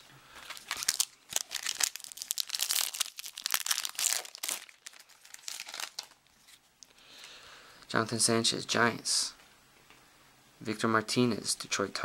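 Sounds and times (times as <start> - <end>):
foil wrapper crinkling and tearing: 0.4 - 6.3.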